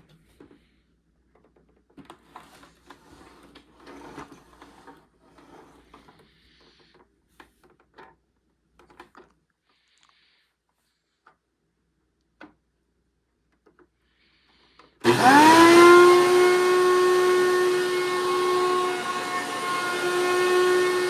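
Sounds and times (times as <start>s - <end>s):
rustling and scraping: 1.4s - 8.1s.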